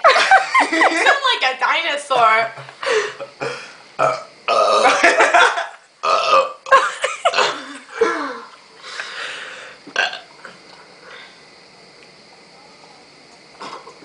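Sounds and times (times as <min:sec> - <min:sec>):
person burping loudly: 0:03.1 - 0:08.5, 0:09.8 - 0:10.6, 0:13.6 - 0:14.0.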